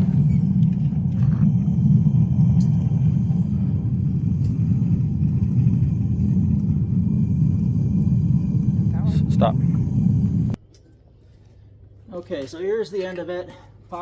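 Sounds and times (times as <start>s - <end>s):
furnace burner rumbling: 0.0s - 10.8s.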